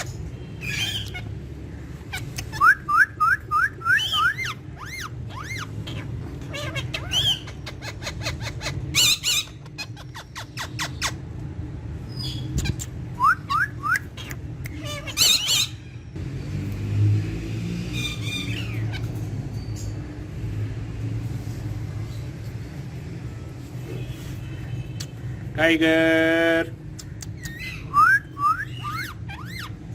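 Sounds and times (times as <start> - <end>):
parrots squawking: 0.0 - 11.4, 12.1 - 16.2, 17.9 - 20.3, 27.0 - 29.9.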